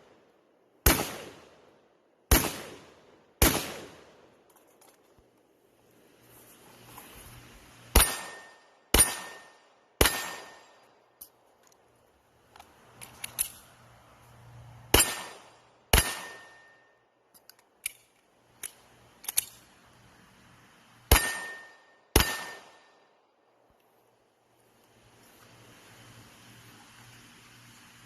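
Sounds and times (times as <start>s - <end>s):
shotgun shots: 0.8s - 1.5s, 2.3s - 4.2s, 7.9s - 10.8s, 14.9s - 16.7s, 21.1s - 22.9s.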